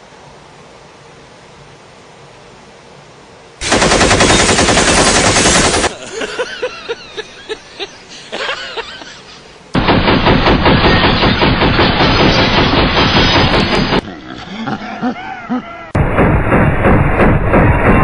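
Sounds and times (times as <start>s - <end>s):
automatic gunfire: 3.6s - 6.0s, 9.8s - 14.1s
single gunshots: 3.6s - 6.0s, 9.8s - 14.1s, 16.0s - 18.0s.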